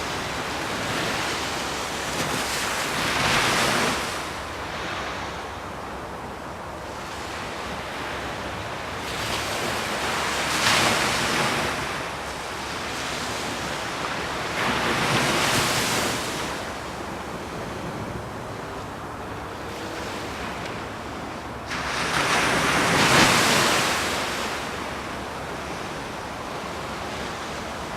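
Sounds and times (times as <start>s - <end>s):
ocean waves breaking: 0.0s - 27.9s.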